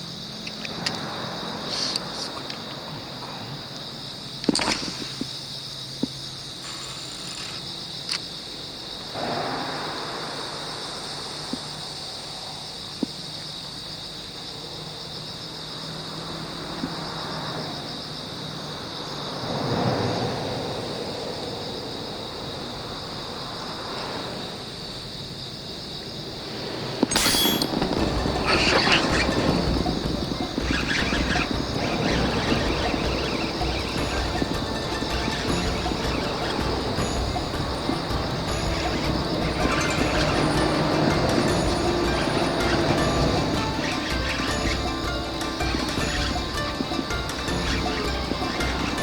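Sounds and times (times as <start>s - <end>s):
insects chirring: 0.0s - 49.0s
outdoor rushing noise: 9.0s - 11.5s, 26.3s - 49.0s.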